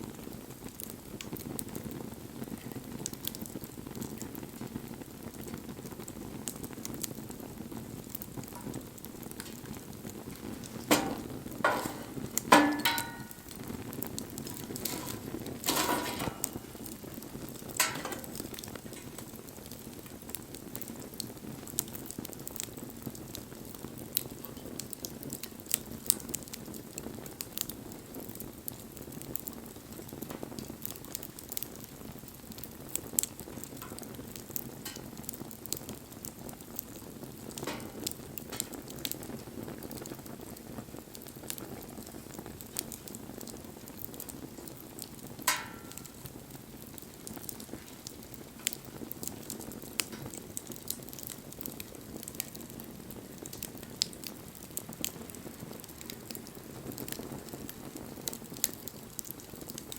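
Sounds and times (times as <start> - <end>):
wood fire crackling: 0.0 - 59.9
loud cracks and knocks: 10.4 - 13.6, 14.4 - 16.8, 17.7 - 19.4, 37.6 - 38.8, 45.5 - 46.3.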